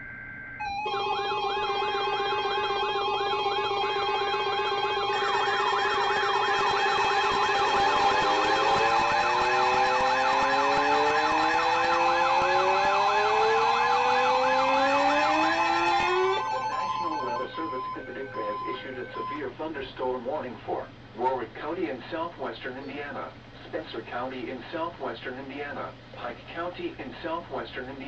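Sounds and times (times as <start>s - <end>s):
steady alarm tones: 0.0s - 21.3s
fast-warbling siren-like tone: 0.1s - 19.5s
slow rising tone sweeps: 3.7s - 18.7s.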